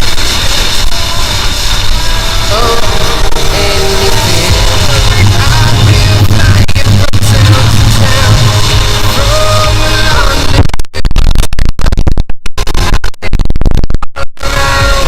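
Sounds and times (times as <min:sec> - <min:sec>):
song with stutter effect: 0:01.6 - 0:10.7.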